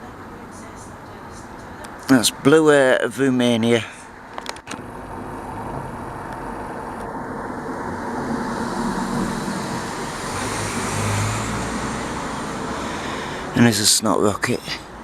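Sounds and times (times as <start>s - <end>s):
road traffic rush: 0.0s - 15.0s
low hum: 4.8s - 13.5s.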